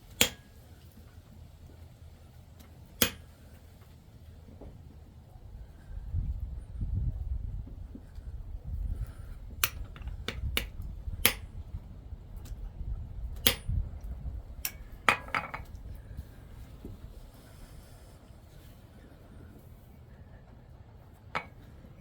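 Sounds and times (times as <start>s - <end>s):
metal tools clinking and tapping: 14.6s - 15.8s, 21.4s - 21.7s.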